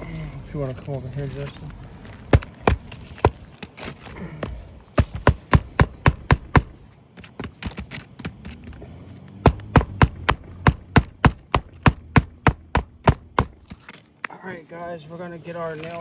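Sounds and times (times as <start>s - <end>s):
hammer striking roofing nails: 2.3s - 8.8s, 9.4s - 13.9s.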